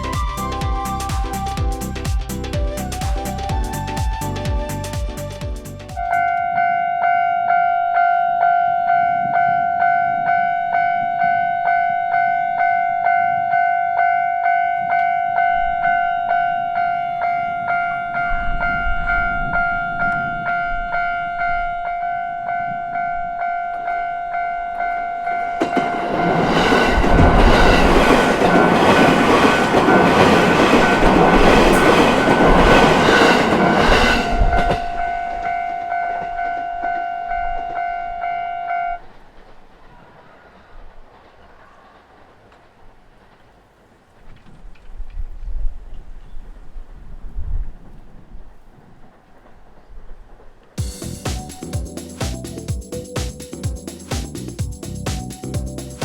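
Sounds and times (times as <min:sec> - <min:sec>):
electric train passing: 0:00.0 - 0:44.3, 0:49.0 - 0:56.0
level-crossing alarm ringing: 0:06.0 - 0:39.0.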